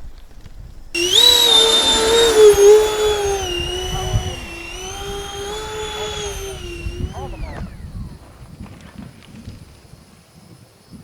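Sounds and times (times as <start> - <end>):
electric ducted-fan motors whining: 1.0 - 7.9.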